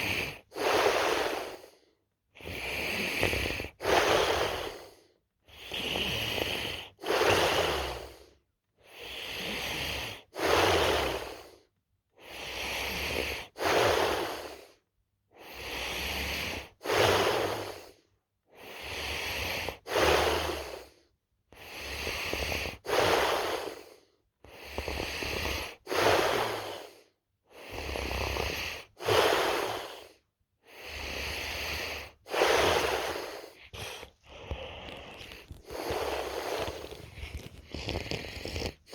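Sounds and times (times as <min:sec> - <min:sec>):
person snoring: 0:02.4 - 0:08.2, 0:21.6 - 0:27.0, 0:27.6 - 0:38.9.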